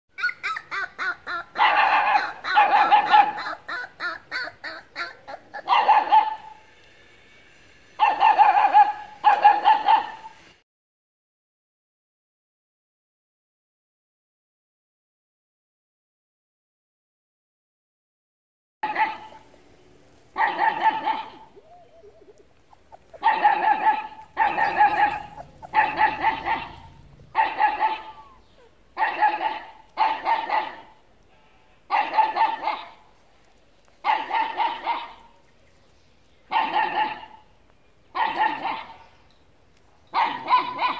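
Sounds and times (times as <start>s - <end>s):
dog barking rapidly: 0.2s - 6.6s, 8.0s - 10.4s, 18.8s - 19.4s, 20.4s - 21.6s, 22.9s - 31.0s, 31.9s - 33.0s, 34.0s - 35.4s, 36.5s - 37.4s, 38.1s - 39.0s, 40.1s - 40.9s.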